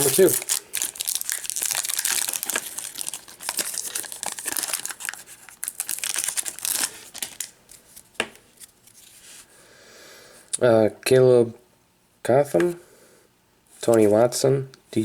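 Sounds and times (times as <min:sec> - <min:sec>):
plastic wrapper tearing and crinkling: 0:00.0 - 0:07.8.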